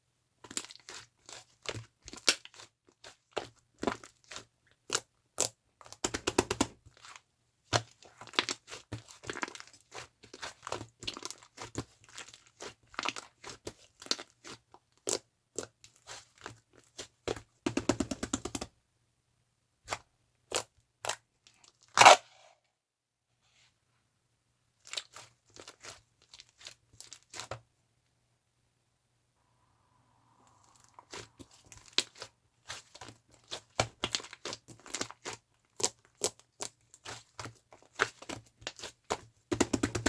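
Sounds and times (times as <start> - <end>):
slime squished by hand: 30.5 - 40.0.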